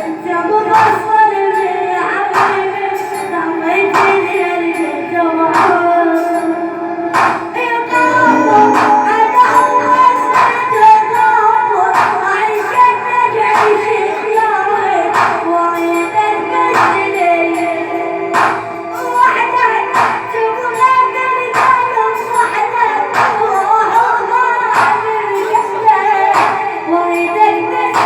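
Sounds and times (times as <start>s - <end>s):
percussion beat: 7.2s - 12.8s
ornamented wavering melody: 7.9s - 12.0s.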